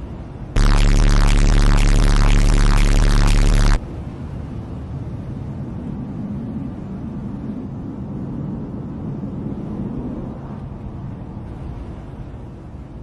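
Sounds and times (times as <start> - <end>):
low rumbling noise: 0.6 - 3.8.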